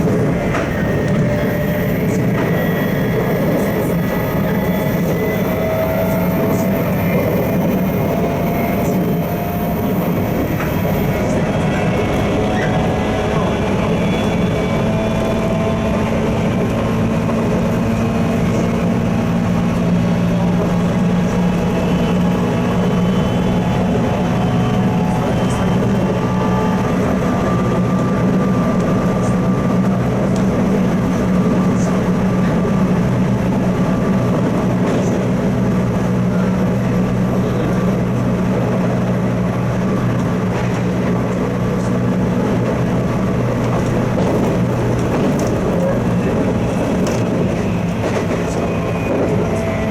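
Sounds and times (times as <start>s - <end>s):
electric train humming: 0.0s - 49.9s.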